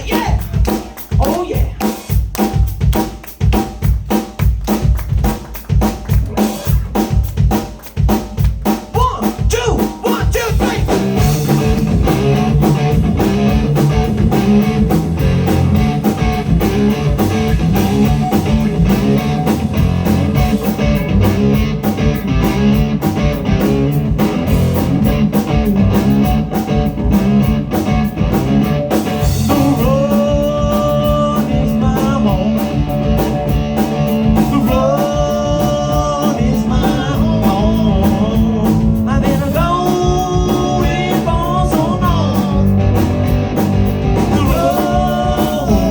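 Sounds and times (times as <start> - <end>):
live blues-rock band playing: 0.0 - 45.9
bending lead guitar notes: 10.9 - 30.3.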